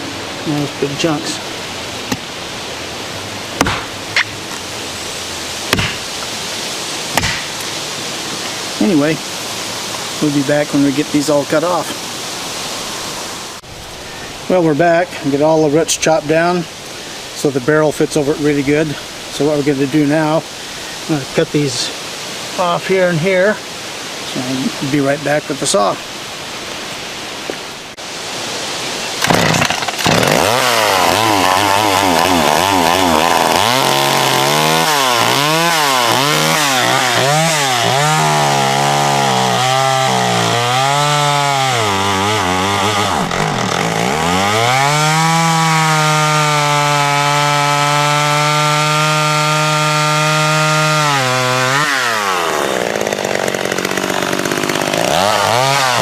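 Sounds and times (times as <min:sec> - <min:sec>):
chainsaw revving: 0:29.2 - 0:56.0.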